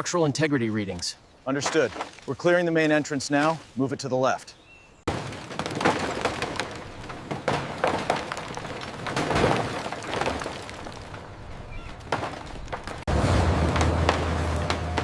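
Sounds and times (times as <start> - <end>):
demolition clatter and breaking: 5.1 - 15.0.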